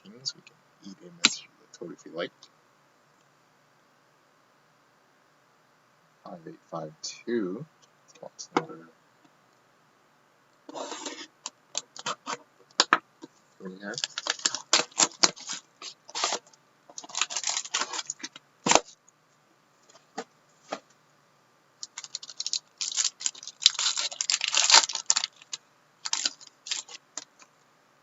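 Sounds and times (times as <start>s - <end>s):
plastic wrapping tearing and crinkling: 10.7s - 12.4s, 13.9s - 19.0s, 21.8s - 27.5s.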